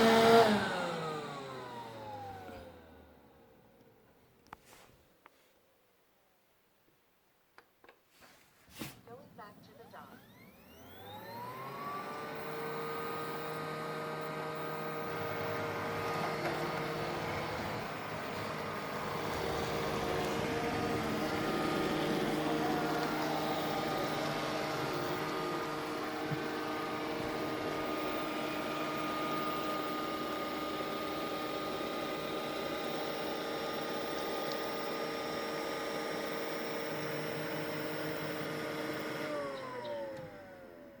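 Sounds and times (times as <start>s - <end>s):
robot vacuum motor whine: 0.0s - 3.3s, 9.6s - 41.0s.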